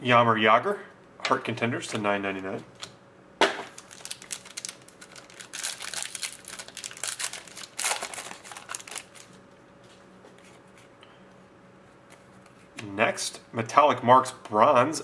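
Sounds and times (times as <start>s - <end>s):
plastic wrapping crinkling: 3.7s - 9.4s.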